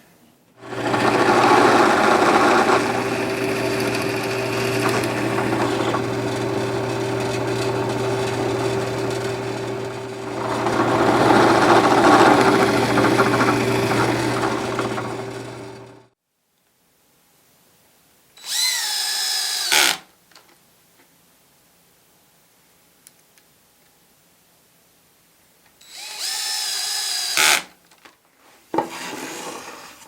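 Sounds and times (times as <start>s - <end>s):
edge sander motor hum: 0.6s - 16.1s
sander belt grinding wood: 0.6s - 16.1s.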